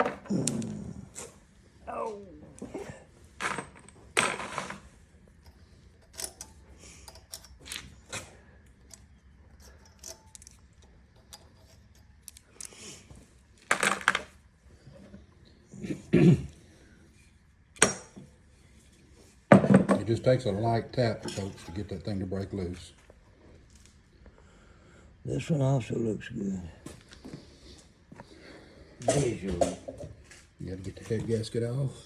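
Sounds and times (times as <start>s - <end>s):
hand tools clinking on metal: 5.4s - 12.8s, 19.9s - 22.1s.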